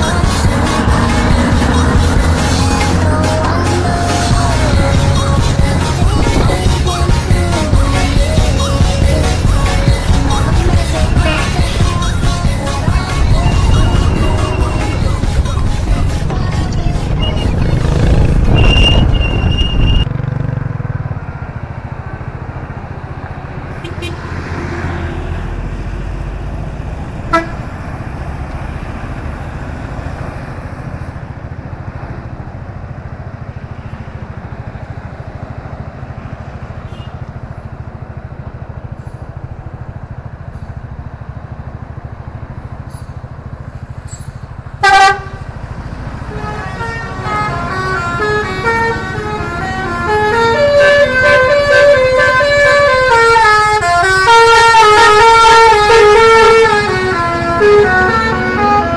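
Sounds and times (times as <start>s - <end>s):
multi-tone bus horn melody: 0.0s - 20.1s, 23.7s - 25.5s, 27.3s - 27.8s, 36.8s - 37.3s, 44.7s - 58.9s
bus engine rumbling: 0.0s - 58.9s
bus horn blast: 10.5s - 15.2s, 23.7s - 24.5s, 27.3s - 27.7s, 36.8s - 37.3s, 44.8s - 45.6s, 46.2s - 58.9s.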